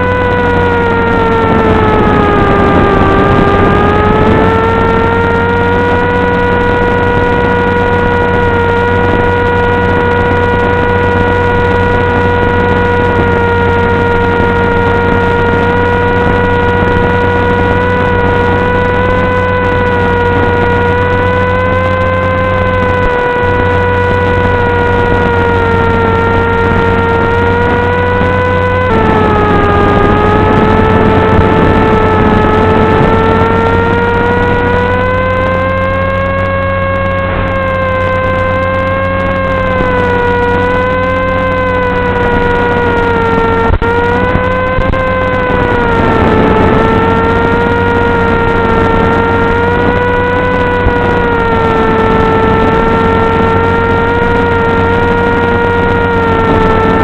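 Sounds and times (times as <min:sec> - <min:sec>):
electric motor and propeller whine: 0:00.0 - 0:57.0.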